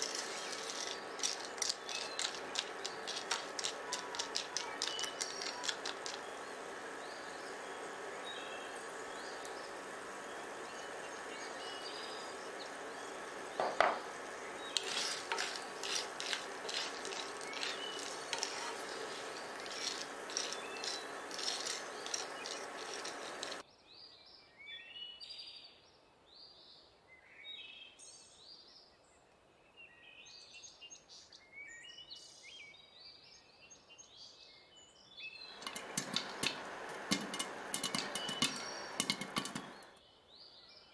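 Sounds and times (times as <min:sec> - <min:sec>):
utensils clicking against pan: 0:00.0 - 0:08.2, 0:12.6 - 0:23.6, 0:35.5 - 0:39.9.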